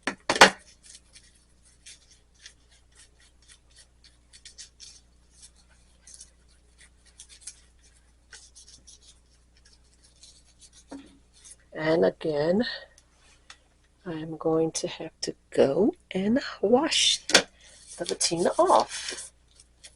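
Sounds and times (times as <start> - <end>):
applicator scratchy rubbing: 17.6 - 19.9.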